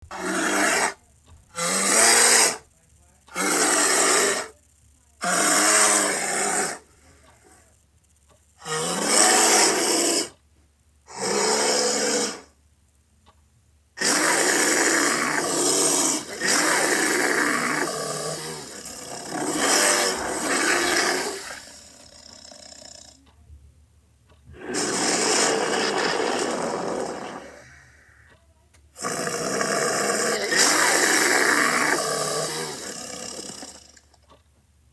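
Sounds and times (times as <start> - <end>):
bear growling and roaring: 0.1 - 2.6, 3.3 - 4.5, 5.2 - 7.5, 8.6 - 10.4, 11.1 - 12.6, 14.0 - 23.2, 24.5 - 28.2, 29.0 - 34.1.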